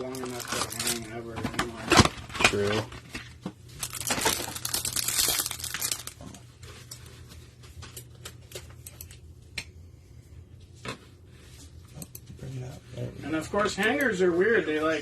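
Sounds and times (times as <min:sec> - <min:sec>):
cardboard packaging crinkling and tearing: 0:00.0 - 0:07.2.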